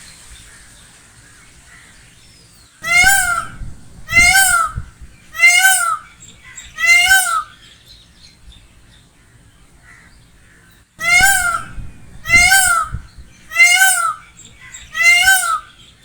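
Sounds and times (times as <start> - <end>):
peacock calling: 2.8 - 7.8, 11.0 - 16.0.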